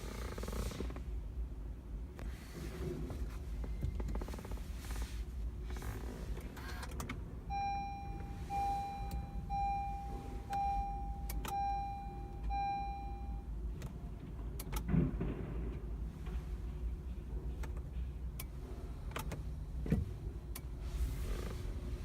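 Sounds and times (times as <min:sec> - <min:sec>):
car warning chime beeping: 0:07.4 - 0:13.6.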